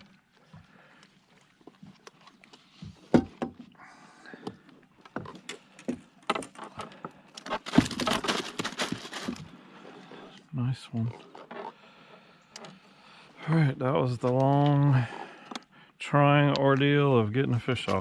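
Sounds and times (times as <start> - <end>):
fishing gear clicks and rattles: 0.0 - 13.0, 14.0 - 18.0
thumps in a boat: 2.8 - 3.7, 4.4 - 9.4.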